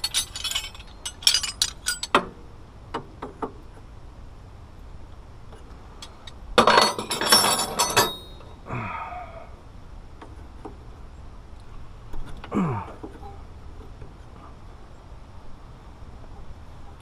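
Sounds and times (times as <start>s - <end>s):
metal hand tools clattering: 0.0s - 2.3s, 6.6s - 8.5s.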